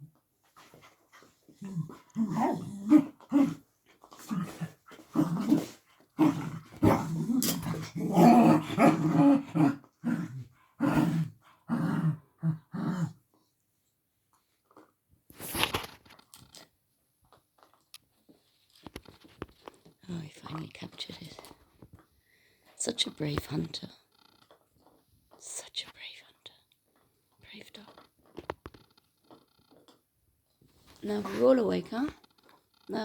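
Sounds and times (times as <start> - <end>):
dog barking and grumbling: 1.6 - 13.2.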